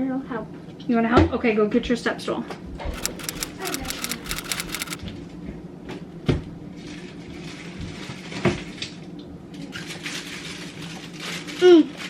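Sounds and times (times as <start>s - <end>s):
light clicks: 2.9s - 5.0s.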